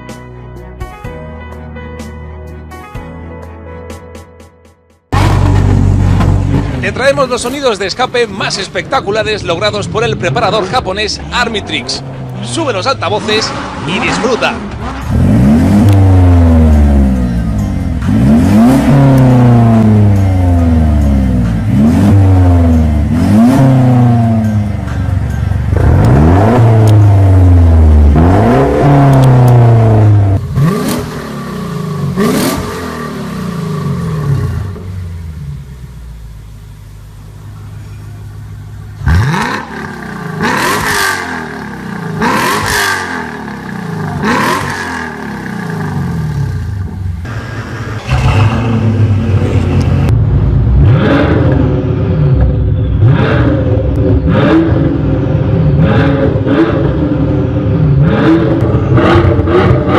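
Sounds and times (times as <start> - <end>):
exhaust cracks: 5.1 - 17.0, 17.8 - 59.9
car engine revving: 5.1 - 59.9.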